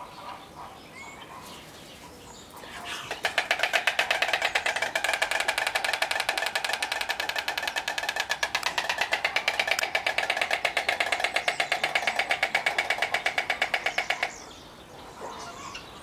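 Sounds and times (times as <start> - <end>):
storks clattering bills: 2.8 - 14.3.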